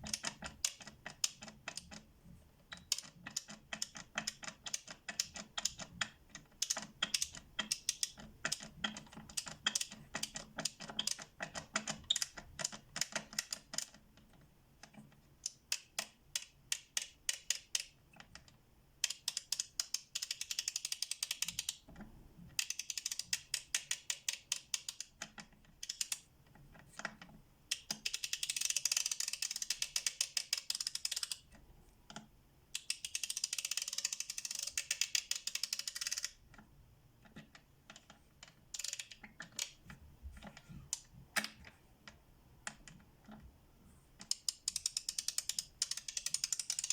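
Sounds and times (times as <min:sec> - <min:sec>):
ratchet pawl clicking: 0:27.7 - 0:31.4, 0:32.8 - 0:36.3, 0:44.3 - 0:46.9.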